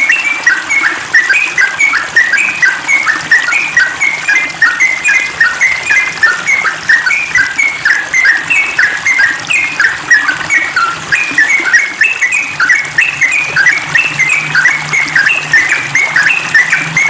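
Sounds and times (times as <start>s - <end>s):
bulbul singing bubbly whistles: 0.0s - 17.0s.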